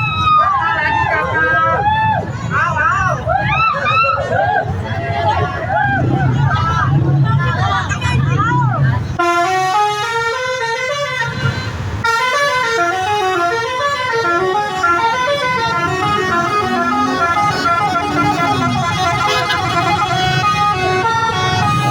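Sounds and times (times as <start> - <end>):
musical bus horn melody: 9.2 - 21.9.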